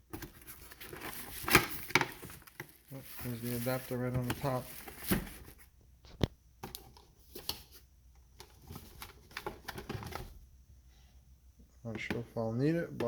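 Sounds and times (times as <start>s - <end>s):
cardboard and plastic rustling: 0.0s - 10.4s.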